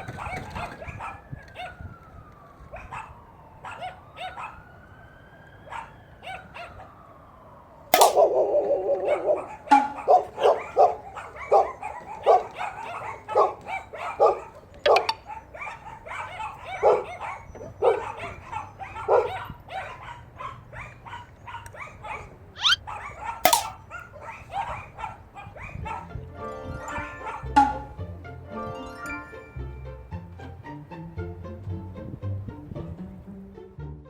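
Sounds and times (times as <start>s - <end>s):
dog barking: 0.0s - 1.9s, 2.7s - 4.6s, 5.7s - 7.0s, 8.1s - 26.2s, 27.2s - 27.8s
brief rising squeal: 22.6s - 22.8s
sharp knocks: 23.5s - 23.7s.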